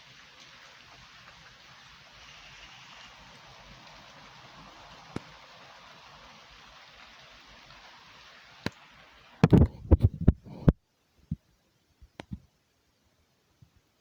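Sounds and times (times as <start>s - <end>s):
steady hiss: 0.0s - 14.0s.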